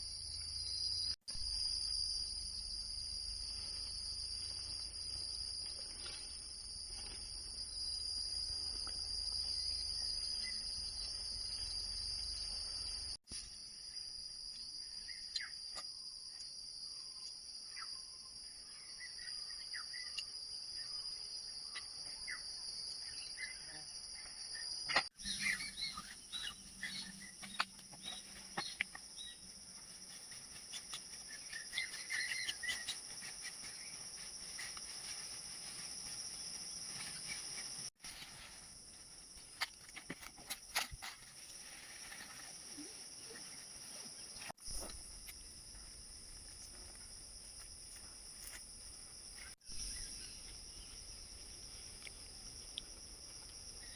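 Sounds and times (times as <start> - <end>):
insects chorus: 0.0 - 53.9
bird chirps: 25.2 - 29.5, 30.7 - 34.0.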